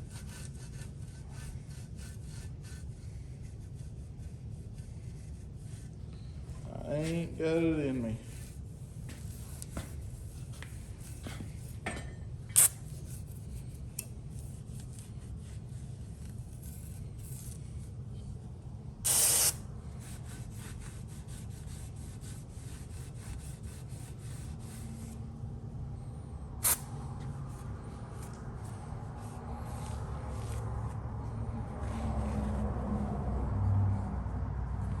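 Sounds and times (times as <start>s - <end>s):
brief loud hiss: 19.1s - 19.6s, 26.6s - 26.9s.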